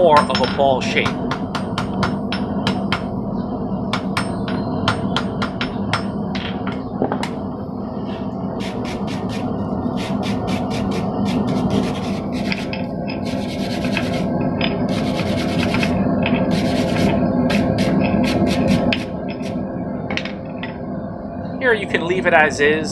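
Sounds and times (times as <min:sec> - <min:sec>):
steady low hum: 0:00.0 - 0:22.9
abrasive scraping on steel: 0:08.0 - 0:19.6.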